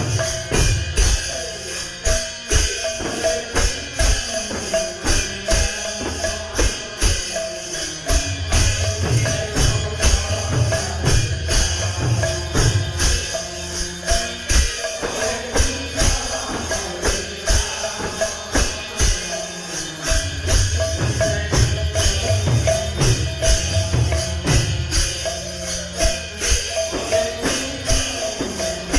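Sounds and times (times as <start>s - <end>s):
hand drum beat: 0.0s - 1.4s
jingling metal percussion: 0.0s - 28.9s.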